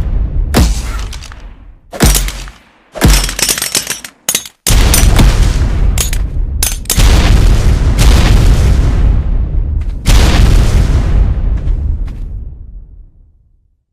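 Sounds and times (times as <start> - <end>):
sustained blast with sharp cracks: 4.7 - 11.9
grenade explosion: 4.7 - 12.8.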